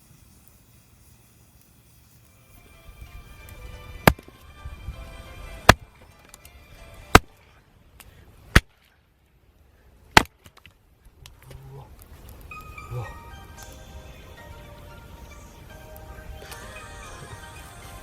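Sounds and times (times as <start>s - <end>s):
axe chopping firewood: 4.0s - 4.3s, 5.5s - 6.4s, 7.0s - 7.4s, 8.5s - 8.8s, 10.1s - 10.7s.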